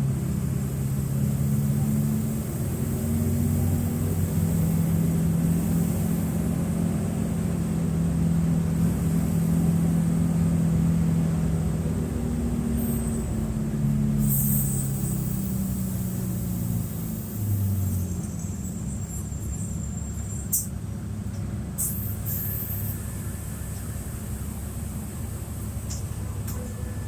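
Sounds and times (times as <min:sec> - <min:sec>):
bus diesel engine droning: 0:00.0 - 0:27.0.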